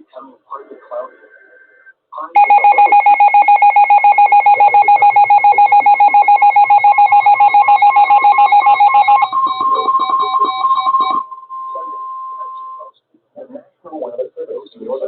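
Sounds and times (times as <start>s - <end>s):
steady alert tone: 2.4s - 11.4s
rapid pulsing electronic beep: 2.4s - 11.8s.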